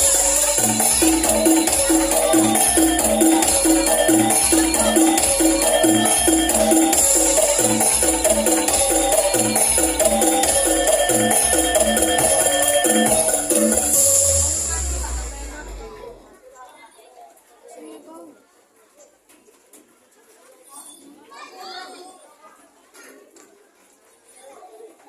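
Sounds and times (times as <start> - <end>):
pitched struck percussion notes: 0.0 - 16.4.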